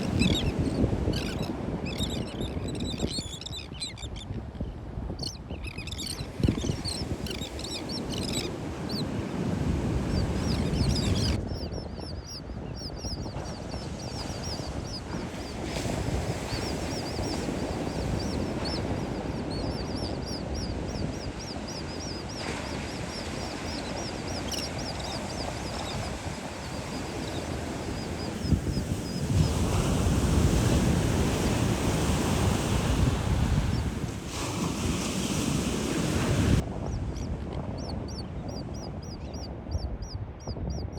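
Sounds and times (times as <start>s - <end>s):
terns calling: 0.0s - 4.2s
wind: 0.0s - 40.9s.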